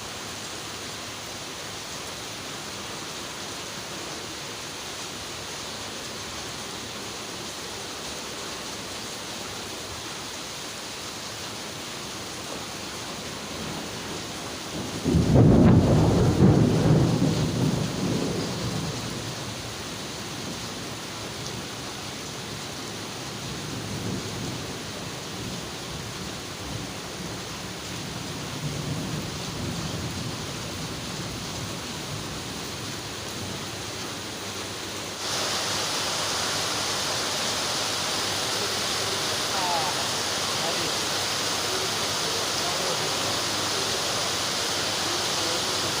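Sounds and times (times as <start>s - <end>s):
steady rain: 0.0s - 46.0s
low thunder rumble: 14.8s - 19.2s.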